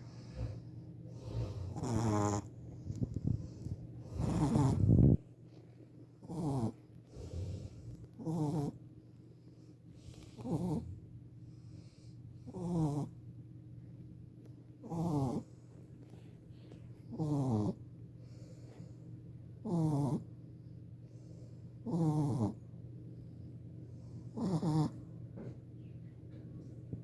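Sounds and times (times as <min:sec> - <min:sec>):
puppy snoring: 0:00.0 - 0:05.2, 0:06.2 - 0:09.0, 0:09.6 - 0:13.3, 0:14.8 - 0:16.3, 0:17.0 - 0:18.9, 0:19.6 - 0:20.5, 0:21.7 - 0:22.7, 0:24.0 - 0:25.6.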